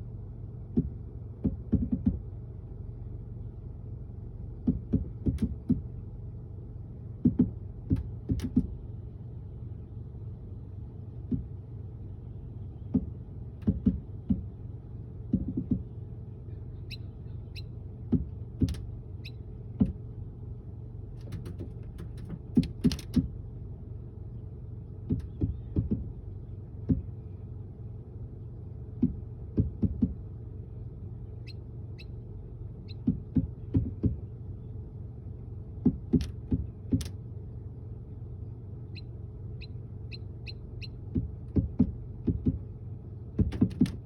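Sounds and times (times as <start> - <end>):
steady low hum: 0.0 - 44.0
faint bird chirps: 16.5 - 17.8, 38.9 - 41.0.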